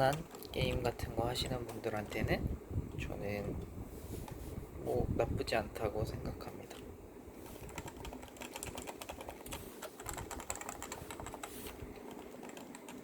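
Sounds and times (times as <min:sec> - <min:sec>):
keyboard typing: 0:07.6 - 0:13.0.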